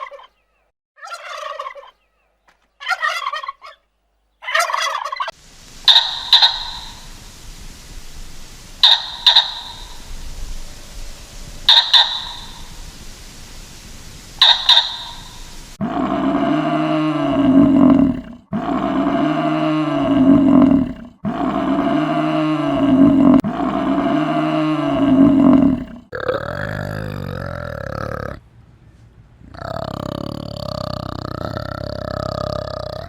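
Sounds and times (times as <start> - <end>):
animal grunting calls: 15.8 - 28.4, 29.5 - 33.0.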